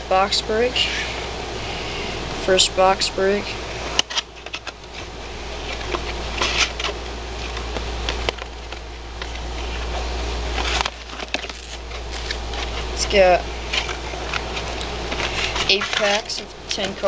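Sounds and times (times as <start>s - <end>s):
steady low hum: 0.0s - 17.0s
cards rustling and clicking: 4.0s - 12.9s, 13.7s - 17.0s.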